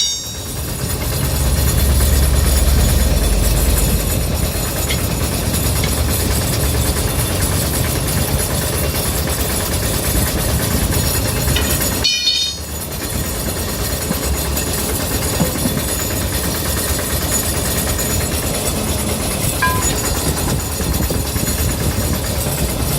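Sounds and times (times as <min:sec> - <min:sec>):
vehicle engine and road rumble: 0:00.3 - 0:12.0.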